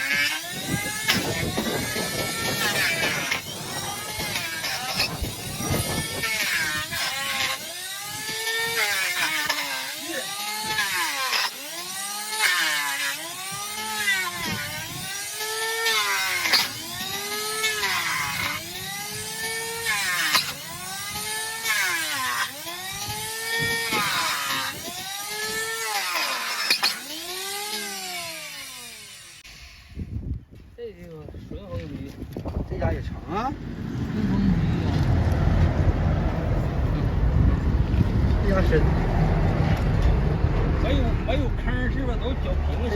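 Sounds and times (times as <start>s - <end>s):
gritty scraping on hoof: 0.0s - 30.0s
electric grinder motor whine: 0.0s - 30.1s, 33.0s - 42.9s.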